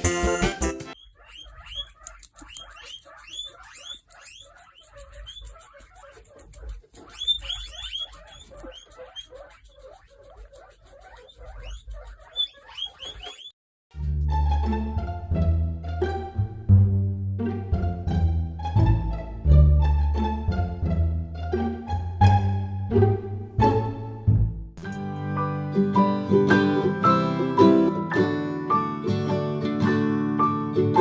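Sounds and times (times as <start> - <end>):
small animal squeaking: 0.9 - 13.6.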